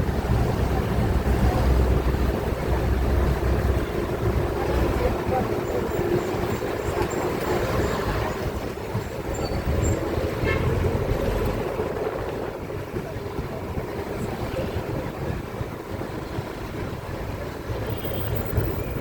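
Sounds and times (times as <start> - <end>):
vehicles running past: 0.0 - 19.0
car horns tooting: 10.3 - 11.0.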